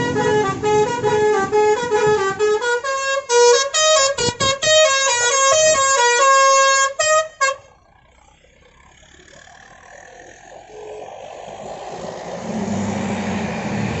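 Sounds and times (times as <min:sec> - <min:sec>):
musical bus horn: 0:00.0 - 0:07.7
low engine rumble: 0:04.2 - 0:14.0.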